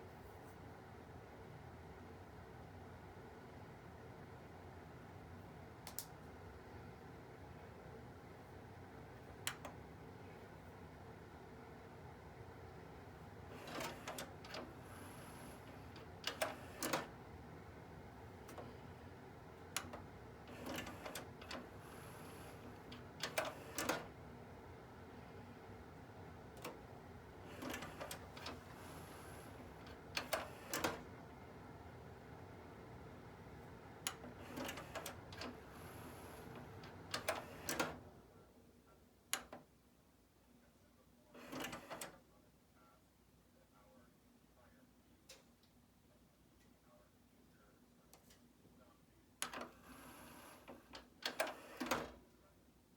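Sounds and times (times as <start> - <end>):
cd changer clicks and clacks: 9.4 - 9.8, 13.4 - 18.8, 19.6 - 24.4, 26.4 - 31.3, 33.6 - 38.1, 49.4 - 52.2.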